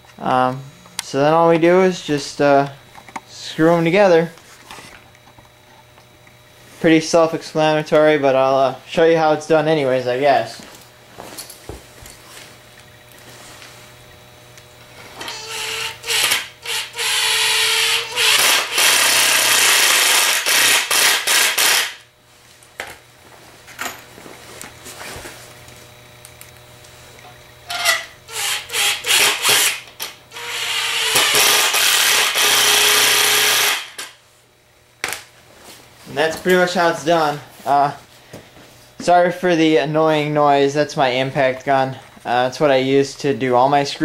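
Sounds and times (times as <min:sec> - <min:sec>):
impact driver driving screws: 0:15.3 - 0:22.0, 0:28.4 - 0:29.8, 0:30.4 - 0:34.1.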